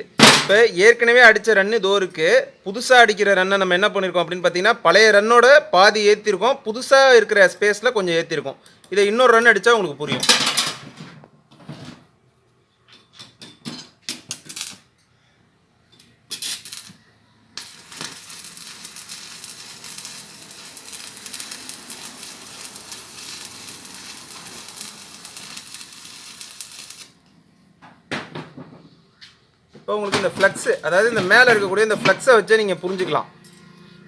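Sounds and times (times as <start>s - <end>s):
welding arc crackling: 16.3s - 17.0s, 17.6s - 27.3s, 30.2s - 31.9s.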